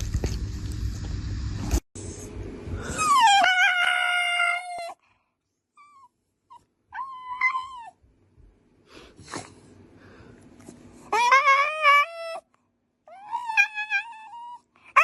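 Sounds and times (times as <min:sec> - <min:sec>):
dog crying high-pitched: 0:02.9 - 0:05.0, 0:05.8 - 0:08.0, 0:11.1 - 0:12.4, 0:13.1 - 0:15.0.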